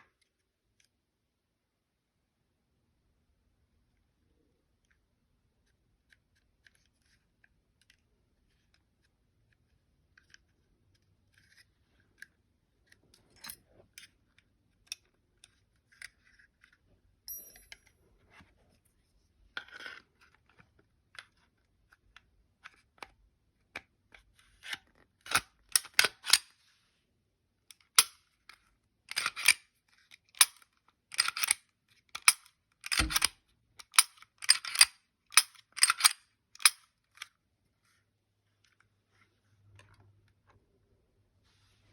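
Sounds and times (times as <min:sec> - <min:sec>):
pistol parts clicking: 0:25.3 - 0:26.5, 0:27.7 - 0:28.2, 0:29.1 - 0:29.6, 0:30.3 - 0:37.4.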